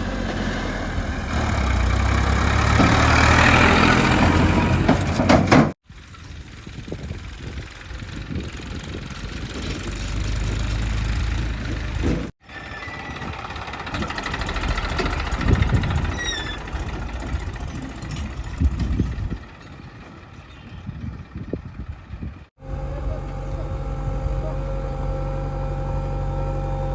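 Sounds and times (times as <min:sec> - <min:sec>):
backhoe diesel engine working: 0:00.0 - 0:26.9
short squeak: 0:12.4 - 0:13.3, 0:16.0 - 0:16.7.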